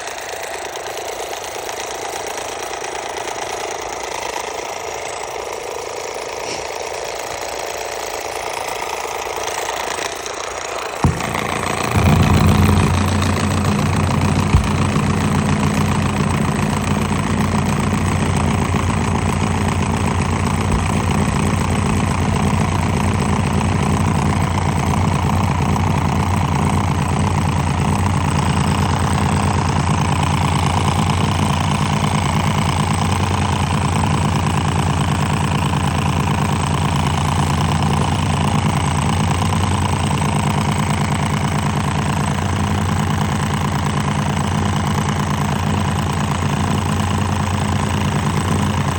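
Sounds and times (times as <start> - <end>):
stalled motor humming and buzzing: 0.0 - 48.9.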